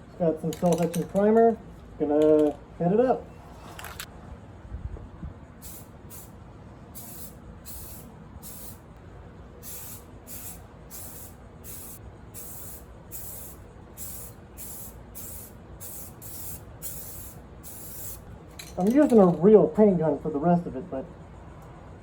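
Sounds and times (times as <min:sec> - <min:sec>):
aerosol spray hissing bursts: 0:05.6 - 0:06.3, 0:07.0 - 0:08.8, 0:09.6 - 0:18.2.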